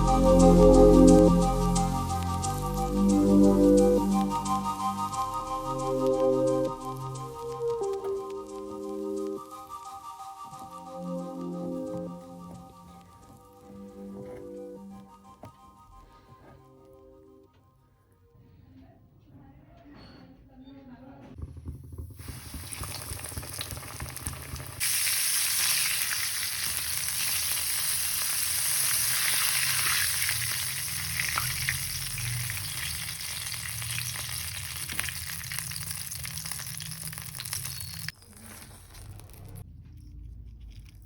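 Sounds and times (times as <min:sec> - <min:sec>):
food sizzling in hot oil: 0:22.2 - 0:39.6.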